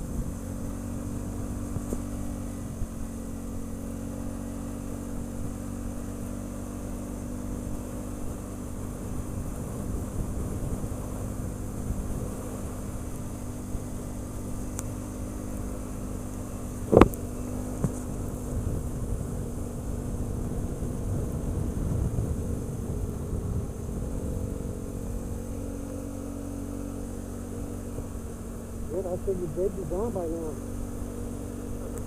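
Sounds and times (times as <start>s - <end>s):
atv engine running: 0.0s - 32.0s
faint tick: 14.6s - 14.9s.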